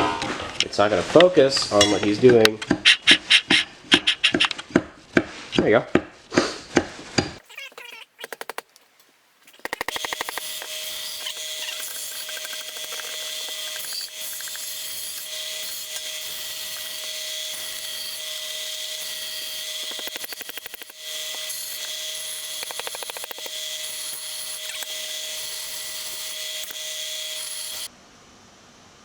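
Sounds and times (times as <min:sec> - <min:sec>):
rapid chattering: 0:07.4 - 0:08.7, 0:09.4 - 0:14.6
power tool whining on wood: 0:09.8 - 0:27.9.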